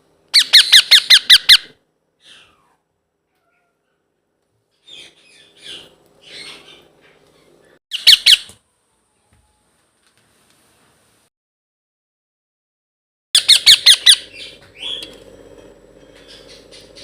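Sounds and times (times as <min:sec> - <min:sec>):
parakeet squawking: 0:00.3 - 0:02.8, 0:04.8 - 0:06.9, 0:07.9 - 0:08.5, 0:13.4 - 0:15.2, 0:16.2 - 0:17.0.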